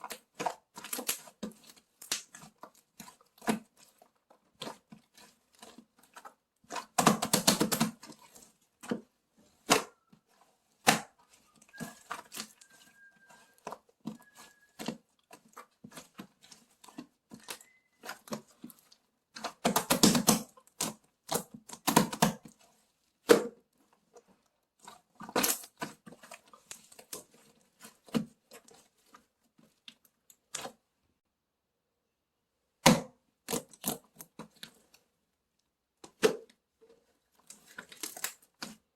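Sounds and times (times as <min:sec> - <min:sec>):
clicks and crackles of handling: 0:00.0 - 0:09.1, 0:23.3 - 0:30.8, 0:33.4 - 0:38.9.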